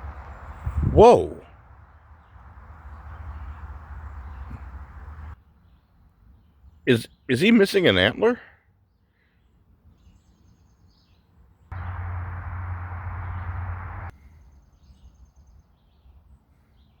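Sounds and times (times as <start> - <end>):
faint bird chirps: 2.2 - 7.4, 9.0 - 17.0
low hum with hiss: 11.8 - 14.1.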